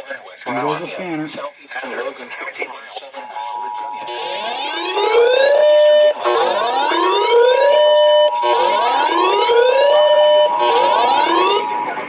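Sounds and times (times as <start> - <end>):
two-tone attention signal: 3.3 - 12.0
rising alert wail: 4.0 - 12.0.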